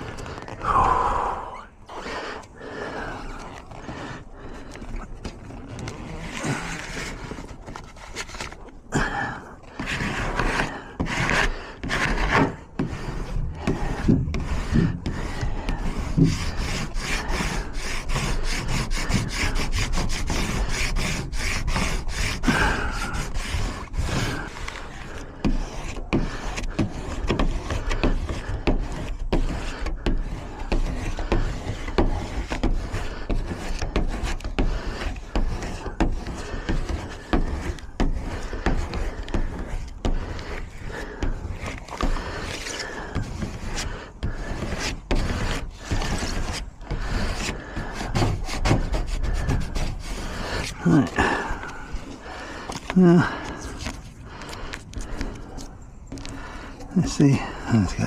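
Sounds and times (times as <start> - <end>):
rubbing and scraping strokes: 0.0 - 58.0.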